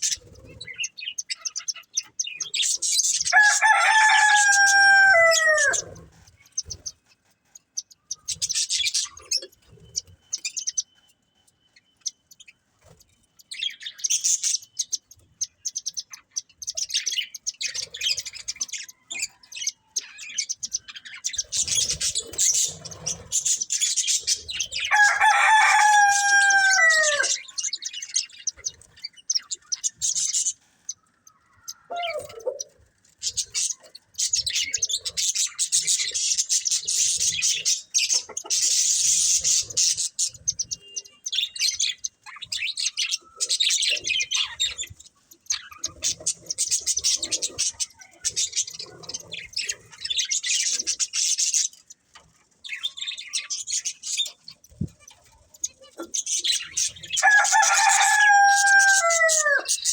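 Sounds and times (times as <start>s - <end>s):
budgerigars chirping and chattering: 0.0s - 59.9s
drawn-out falling bird call: 3.3s - 6.0s, 24.9s - 27.4s, 57.2s - 59.8s.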